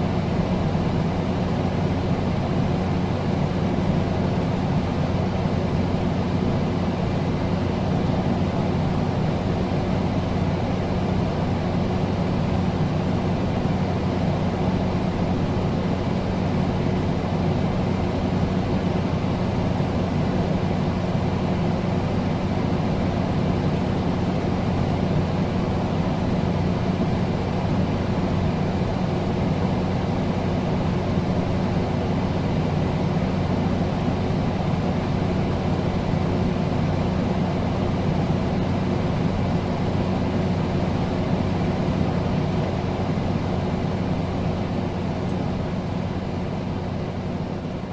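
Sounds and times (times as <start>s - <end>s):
air conditioner running: 0.0s - 47.9s.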